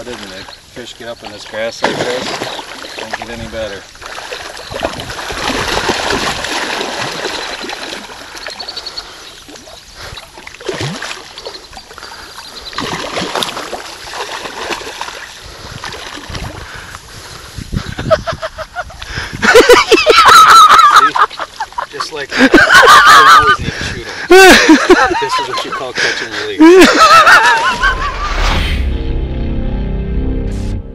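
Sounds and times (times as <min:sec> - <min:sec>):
shallow water splashing: 0:00.0 - 0:17.5.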